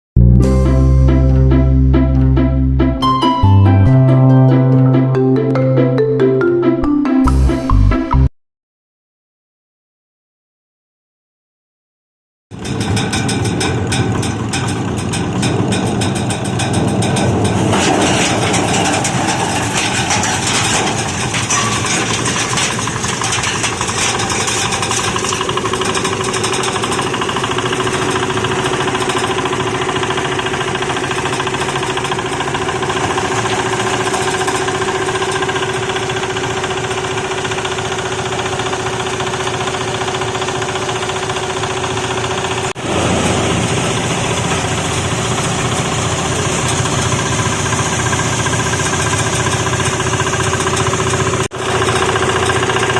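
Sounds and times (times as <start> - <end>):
sorting machine clattering: 12.6 - 52.9.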